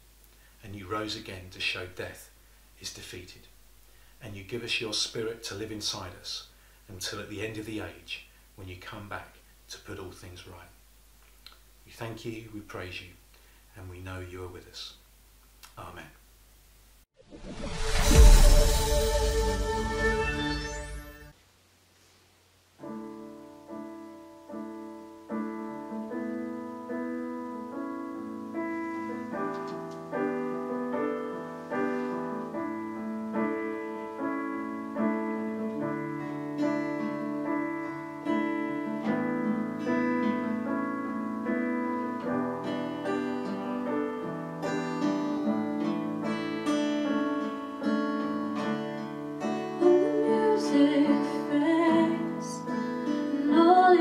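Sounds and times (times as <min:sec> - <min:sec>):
slow piano chords: 0:22.8 - 0:53.9
person singing: 0:49.8 - 0:54.0.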